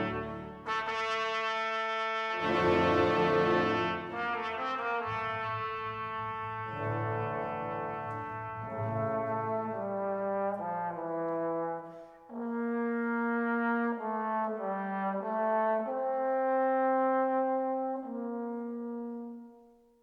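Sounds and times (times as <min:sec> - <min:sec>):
brass playing sustained chords: 0:00.0 - 0:11.1.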